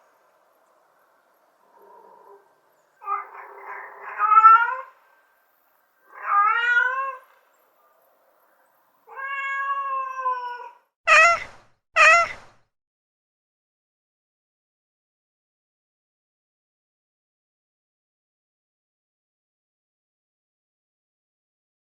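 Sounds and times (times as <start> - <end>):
cat meowing: 3.0 - 5.0, 6.1 - 7.3, 9.1 - 12.4.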